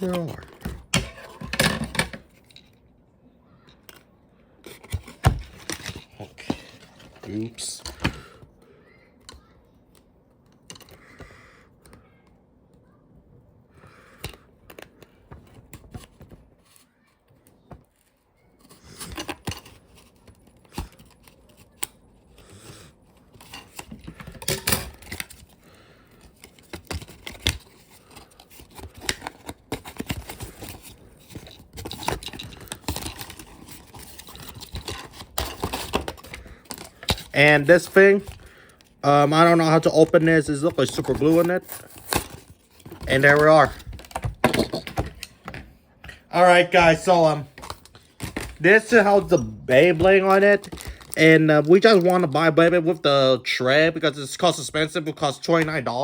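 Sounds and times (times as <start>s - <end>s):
plastic packaging rustling and clicking: 14.2s - 53.1s.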